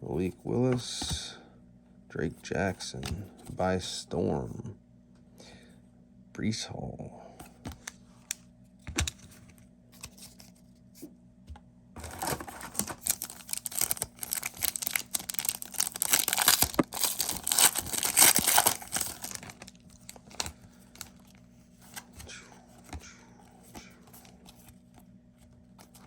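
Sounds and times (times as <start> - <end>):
foil wrapper tearing and crinkling: 12.0 - 22.1.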